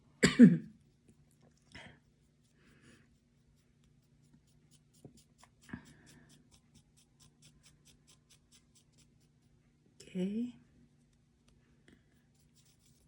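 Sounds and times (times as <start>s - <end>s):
cotton swab scratching on brass: 2.0s - 9.5s, 12.2s - 13.0s.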